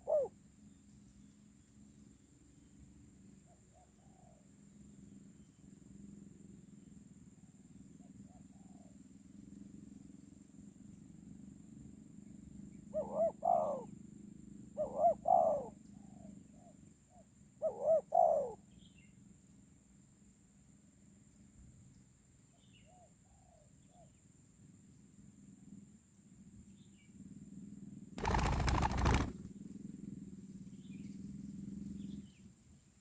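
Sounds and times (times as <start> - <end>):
doves cooing: 0.0 - 0.3, 28.2 - 29.5.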